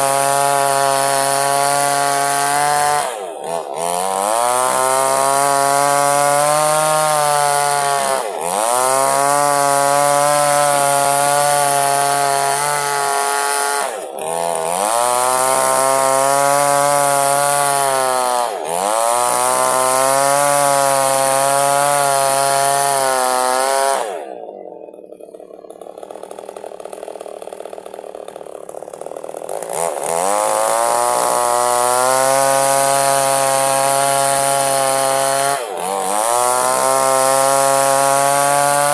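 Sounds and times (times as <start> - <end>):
chainsaw cutting log: 0.0 - 38.9.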